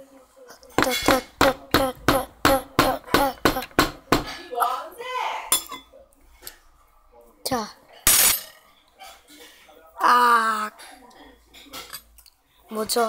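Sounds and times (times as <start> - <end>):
knocking on hard sweet in dish: 0.8 - 4.4.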